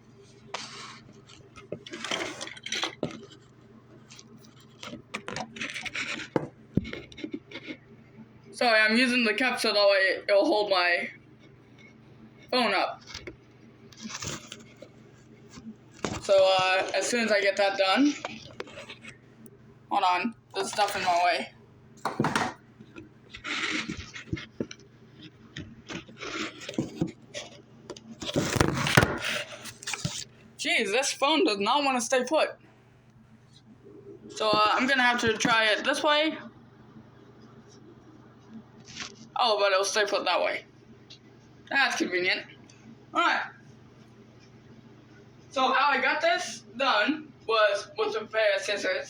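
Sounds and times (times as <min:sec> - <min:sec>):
rustling scrapes: 0:00.2 - 0:07.8, 0:14.0 - 0:19.3, 0:23.3 - 0:30.4
objects being handled: 0:00.3 - 0:07.8, 0:13.0 - 0:17.2, 0:18.0 - 0:19.4, 0:22.0 - 0:30.4.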